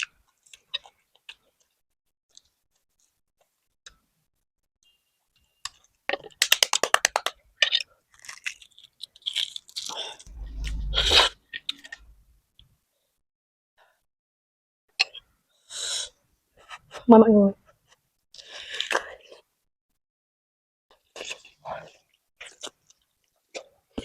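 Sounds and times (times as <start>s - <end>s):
low bump: 10.3s - 12.4s.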